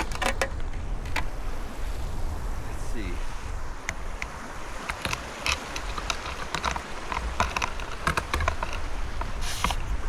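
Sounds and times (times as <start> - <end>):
wind rumble on microphone: 0.0 - 10.0
ice cracking and crunching: 4.7 - 9.4.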